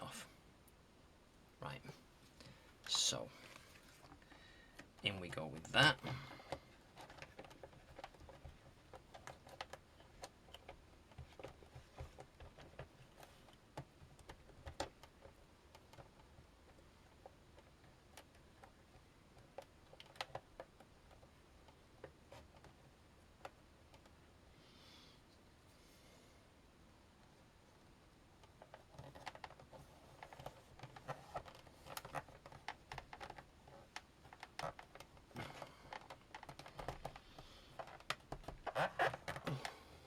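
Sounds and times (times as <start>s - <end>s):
soft rustle: 1.7s - 17.7s, 27.2s - 40.0s.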